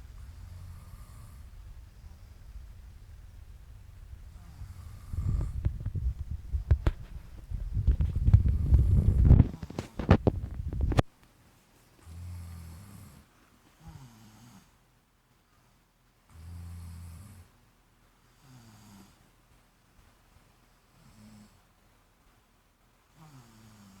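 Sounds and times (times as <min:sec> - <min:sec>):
low steady snore: 0:00.0 - 0:06.7, 0:07.7 - 0:10.0, 0:12.0 - 0:14.8, 0:16.3 - 0:17.6, 0:18.2 - 0:19.3, 0:20.8 - 0:21.8, 0:23.1 - 0:24.0.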